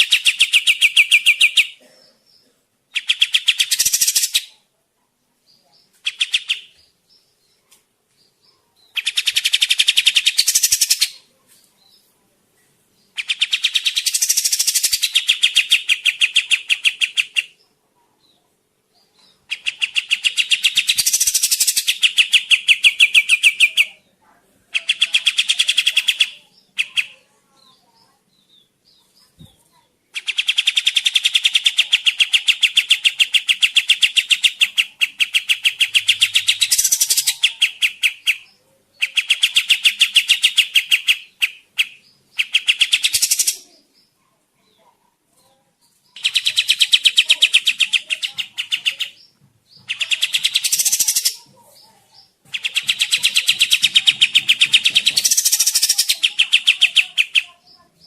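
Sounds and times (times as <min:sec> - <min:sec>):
songbird trilling: 0:00.0 - 0:01.8, 0:02.9 - 0:04.5, 0:13.2 - 0:17.6, 0:19.5 - 0:24.0, 0:30.2 - 0:44.1, 0:46.2 - 0:51.5, 0:52.2 - 0:58.0.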